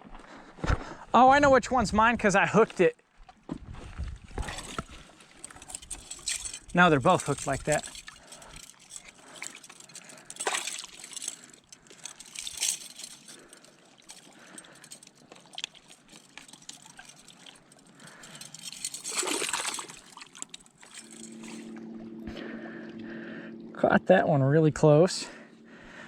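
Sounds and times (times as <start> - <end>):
water trickling at shoreline: 4.3 - 24.0
low steady hum: 4.3 - 26.0
water splashes: 13.2 - 23.7.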